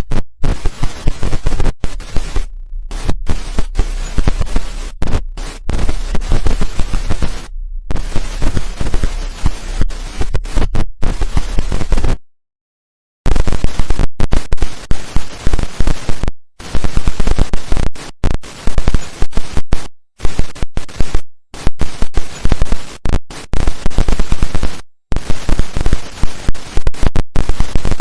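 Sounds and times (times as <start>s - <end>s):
digital glitch crackles: 0.5s - 12.2s.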